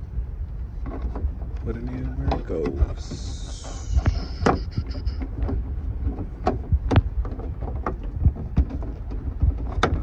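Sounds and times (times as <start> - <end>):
steady low rumble: 0.0 - 10.0
plastic clicks and knocks: 4.0 - 10.0.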